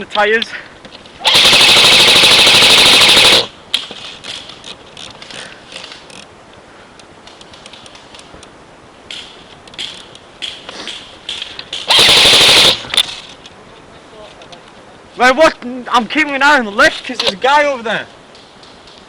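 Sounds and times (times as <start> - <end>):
airsoft rifle full-auto burst: 1.2 - 3.6, 11.9 - 13.0
airsoft shots and clicks: 1.3 - 3.5, 9.1 - 13.1.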